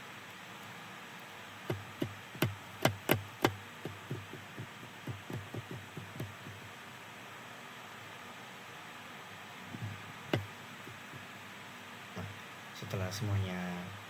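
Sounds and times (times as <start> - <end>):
computer keyboard keystrokes: 1.7 - 6.6.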